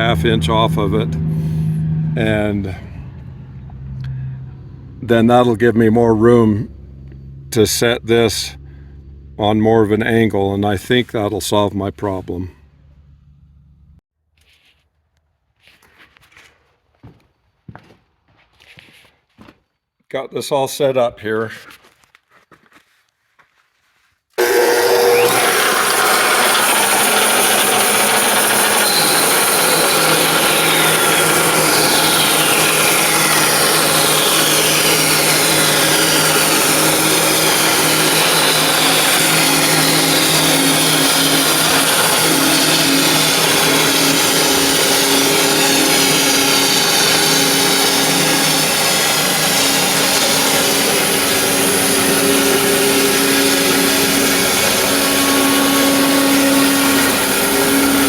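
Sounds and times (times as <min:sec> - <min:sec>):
bandsaw cutting wood: 0:00.0 - 0:02.9, 0:24.4 - 0:58.0.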